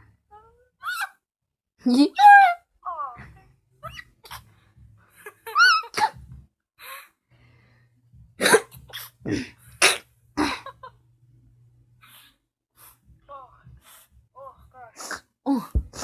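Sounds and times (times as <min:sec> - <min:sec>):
person sneezing: 0:08.4 - 0:10.6, 0:15.0 - 0:16.0.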